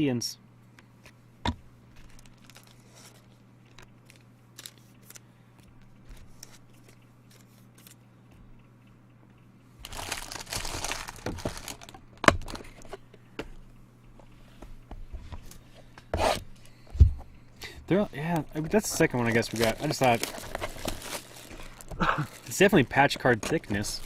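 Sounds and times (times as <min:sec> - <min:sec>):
foil wrapper crinkling and tearing: 0:02.0 - 0:03.3, 0:04.0 - 0:05.2, 0:09.8 - 0:12.8, 0:18.3 - 0:24.0.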